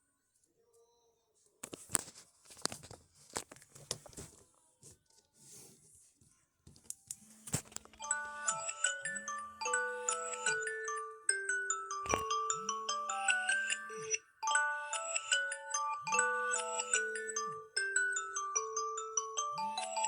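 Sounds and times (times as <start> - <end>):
phone being handled: 1.6 - 4.4, 6.7 - 8.1, 12.0 - 12.5
phone alarm chiming melody: 8.0 - 20.0.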